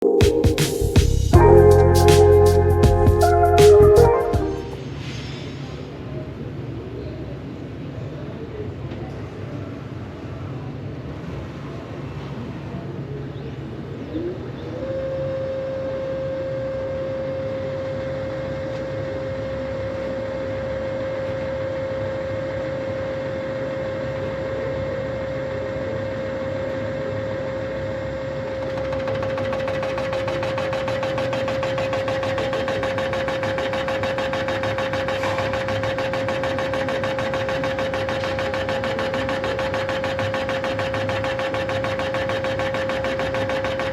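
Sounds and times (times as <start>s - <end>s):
machine spindle high whine: 15.2s - 43.9s
rough pulsing machining noise: 28.5s - 43.9s.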